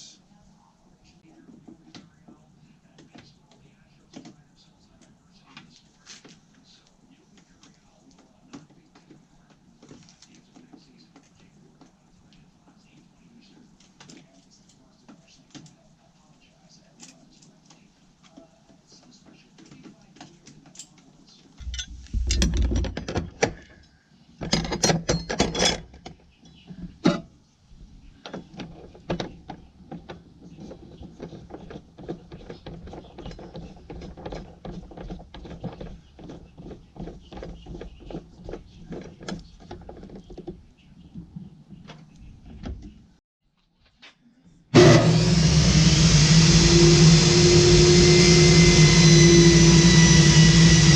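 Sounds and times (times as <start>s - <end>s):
clatter of parts being handled: 21.6s - 23.8s, 24.4s - 26.2s
table saw motor running: 44.8s - 50.9s.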